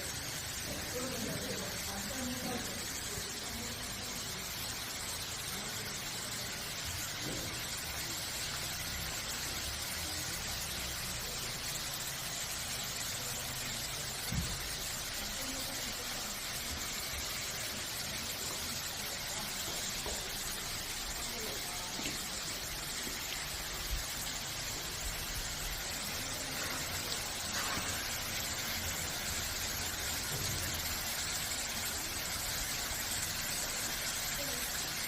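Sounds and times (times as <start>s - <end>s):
waterfall roaring: 13.2s - 32.9s.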